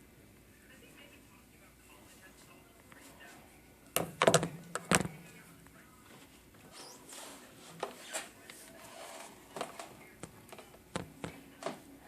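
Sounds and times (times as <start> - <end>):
soft rustling scrape: 6.0 - 9.9.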